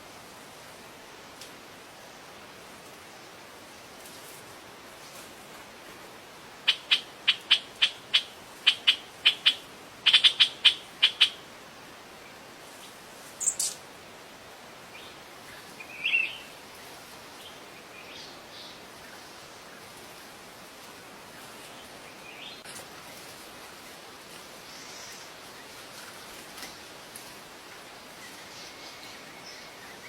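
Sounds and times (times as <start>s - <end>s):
steady hiss: 0.0s - 30.0s
bird chirping: 13.4s - 13.8s.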